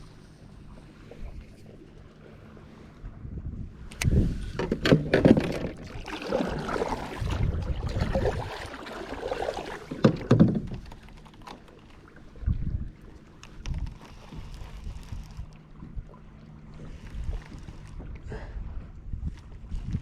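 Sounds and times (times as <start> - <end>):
water swishing: 0.0 - 19.9
knocks against kayak hull: 4.5 - 5.9, 9.9 - 10.9.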